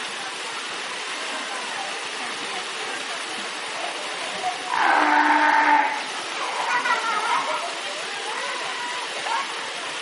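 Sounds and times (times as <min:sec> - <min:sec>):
fur seal calling: 0:04.7 - 0:06.0.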